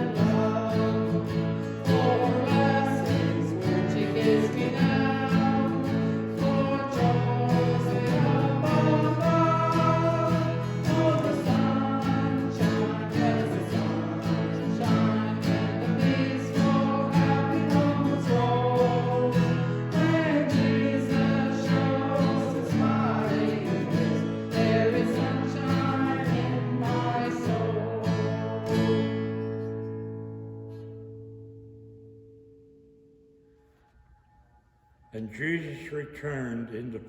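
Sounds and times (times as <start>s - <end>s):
person singing a hymn: 0.0s - 29.4s
strummed acoustic guitar: 0.0s - 34.4s.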